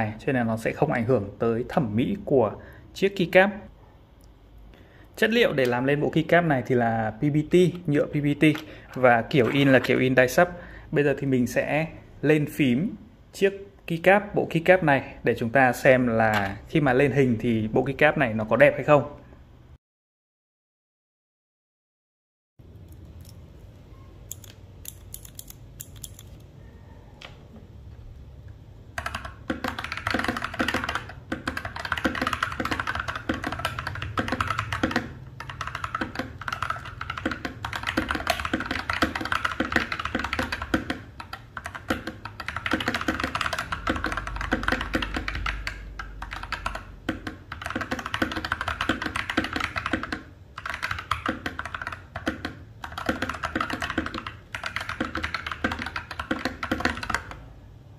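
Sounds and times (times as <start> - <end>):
fast typing on mechanical keyboard: 28.9 - 57.4.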